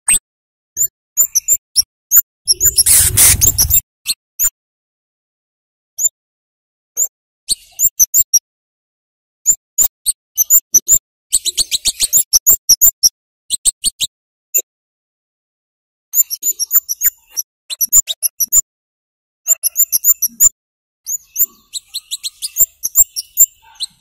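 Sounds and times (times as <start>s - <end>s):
bird giving high chirps: 2.5s - 3.8s.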